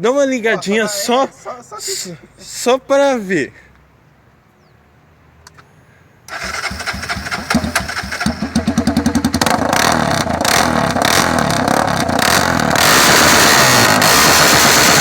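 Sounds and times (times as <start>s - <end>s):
motorcycle engine revving: 6.3s - 15.0s.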